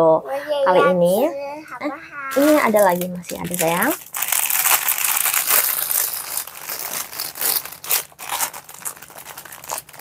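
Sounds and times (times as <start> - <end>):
plastic packaging crinkling: 2.3 - 10.0.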